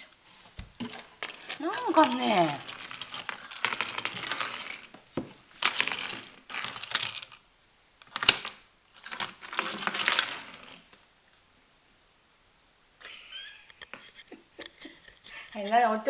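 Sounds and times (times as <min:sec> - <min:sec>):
small hard objects rattling: 0:00.8 - 0:05.0, 0:05.6 - 0:07.4, 0:08.0 - 0:10.9.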